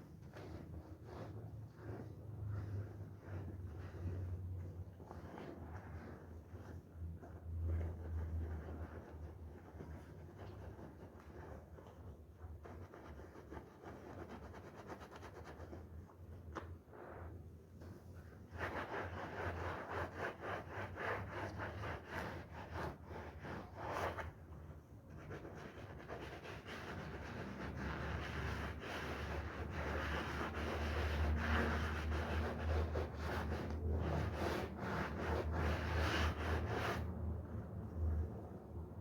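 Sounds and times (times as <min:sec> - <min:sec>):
stiff brush scrubbing wet rug: 0:00.0 - 0:12.1, 0:25.6 - 0:37.1.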